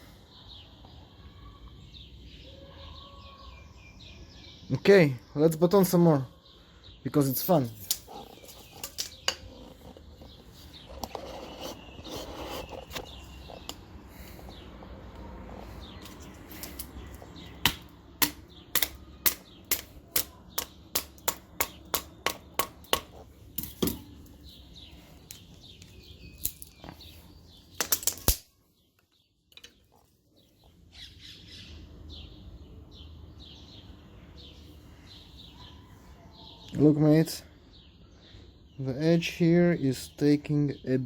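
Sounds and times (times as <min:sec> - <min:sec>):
faint birds chirping: 0:00.0 - 0:41.0.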